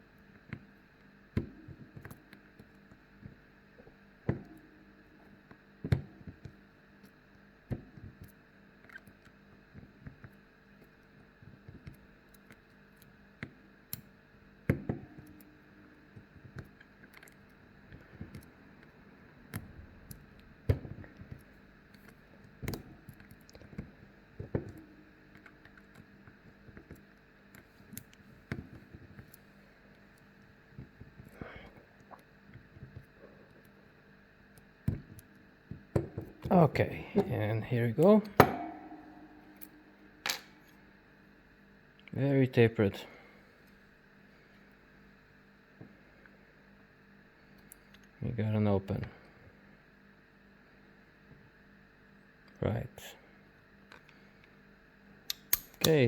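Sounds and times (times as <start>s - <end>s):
lock pick clicking on pins: 55.3s - 56.0s.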